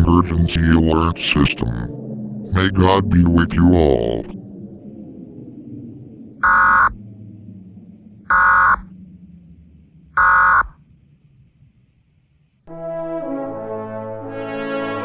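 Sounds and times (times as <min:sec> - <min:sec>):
low hum: 0:00.0 - 0:15.0
brass music: 0:12.7 - 0:15.0.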